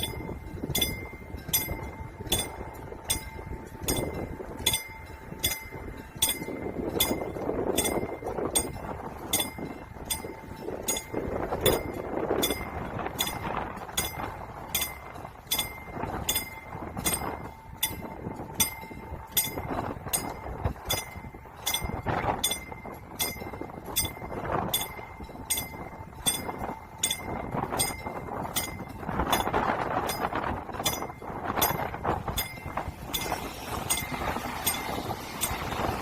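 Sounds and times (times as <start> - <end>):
level crossing warning bell: 0.0 - 36.0
rushing noise: 28.5 - 36.0.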